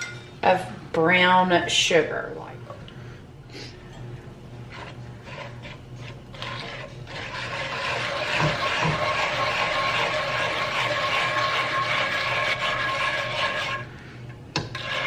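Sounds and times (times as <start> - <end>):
stirring and scraping in pan: 4.6 - 15.0.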